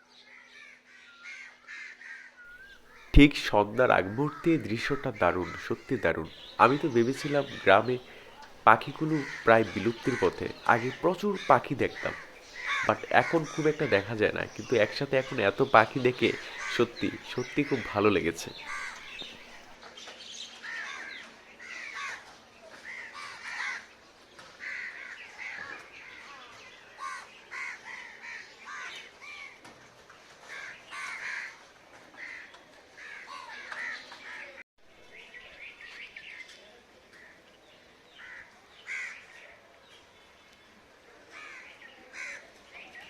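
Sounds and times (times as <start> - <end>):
crows cawing: 0.6 - 19.8, 20.6 - 22.2, 22.9 - 23.9, 24.6 - 25.7, 27.0 - 29.4, 30.5 - 31.6, 32.2 - 34.6, 38.2 - 39.3, 41.3 - 42.5
small birds chirping: 2.5 - 19.8.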